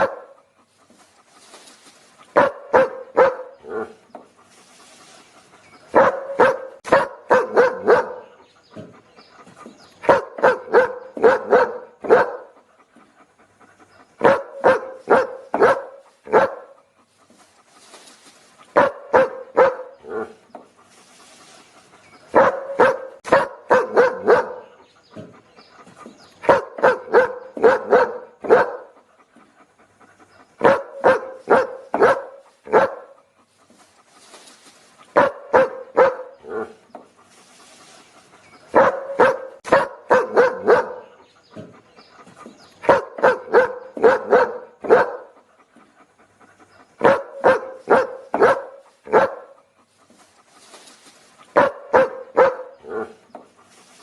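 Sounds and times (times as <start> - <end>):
dog barking: 0.0 - 0.4, 2.3 - 4.0, 5.9 - 8.9, 10.0 - 12.6, 14.2 - 16.8, 18.7 - 20.4, 22.3 - 25.3, 26.4 - 29.0, 30.6 - 33.2, 35.1 - 36.8, 38.7 - 41.7, 42.8 - 45.4, 47.0 - 49.6, 51.5 - 53.2.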